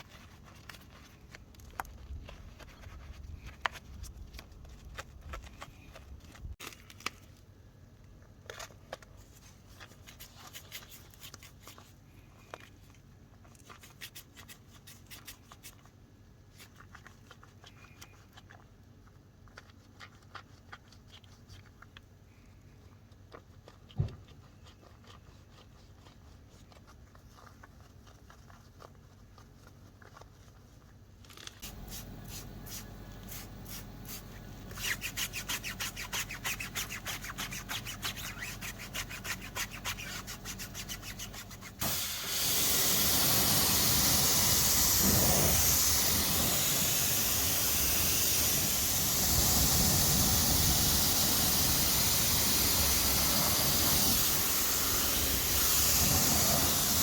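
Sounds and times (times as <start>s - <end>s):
pressure washer spraying water: 31.6s - 57.0s.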